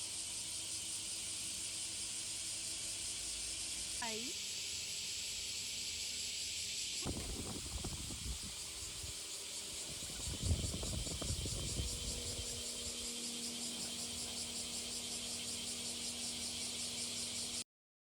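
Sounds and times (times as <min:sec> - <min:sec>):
cicadas shrilling: 0:00.0 - 0:17.6
low steady hum: 0:07.0 - 0:17.6.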